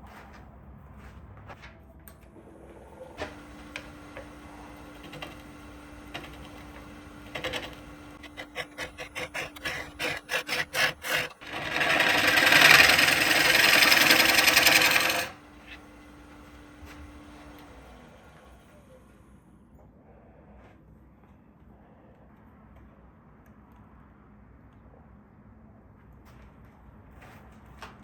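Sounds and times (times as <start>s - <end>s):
motor humming: 3.1s - 18.9s
scraping strokes: 3.2s - 15.9s.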